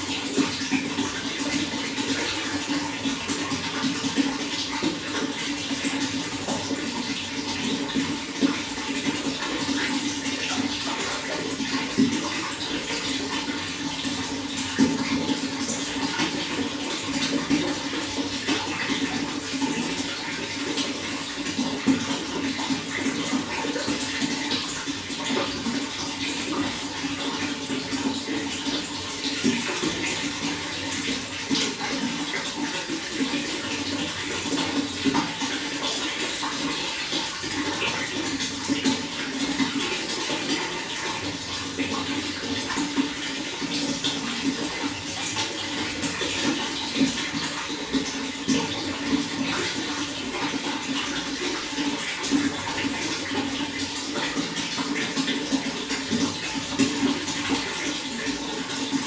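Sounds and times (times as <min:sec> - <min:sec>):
running water splashing: 0:00.0 - 0:59.0.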